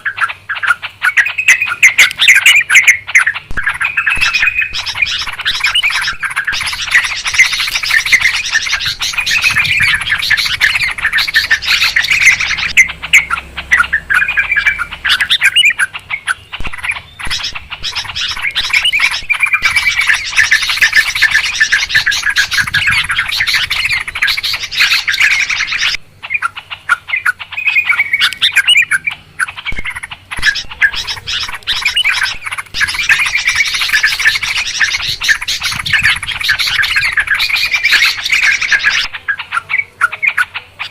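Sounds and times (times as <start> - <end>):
birds chattering: 0.0 - 40.9.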